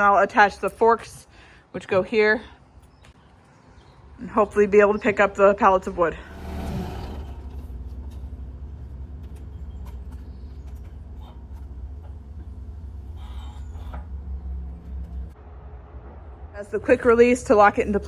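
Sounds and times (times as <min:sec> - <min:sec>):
diesel engine idling: 0:06.2 - 0:15.4
short metal scrape: 0:06.3 - 0:07.7.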